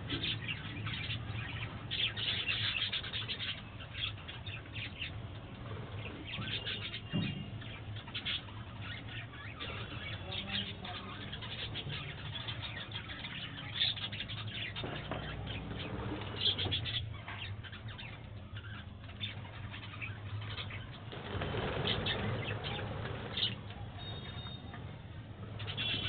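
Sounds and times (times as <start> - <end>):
budgerigars chirping: 0.1 - 24.6, 25.6 - 26.0
wings flapping: 21.1 - 23.7.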